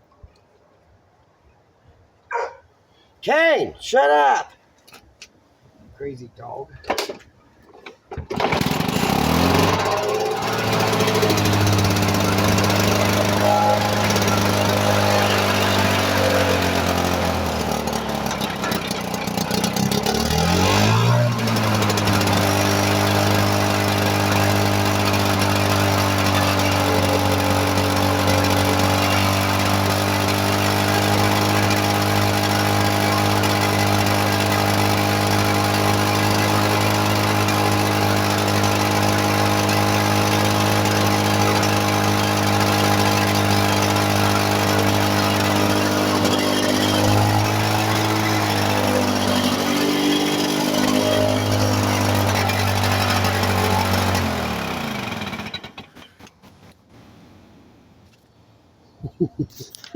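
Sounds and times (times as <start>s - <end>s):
two-stroke mower engine running: 7.8s - 56.8s.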